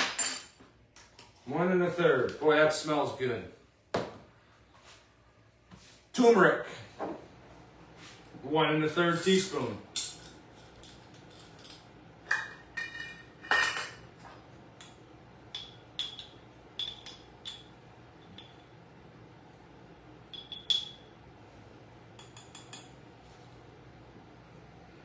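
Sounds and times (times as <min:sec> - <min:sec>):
spoon clinking against containers: 0:14.8 - 0:18.7, 0:20.3 - 0:21.1, 0:22.2 - 0:23.0.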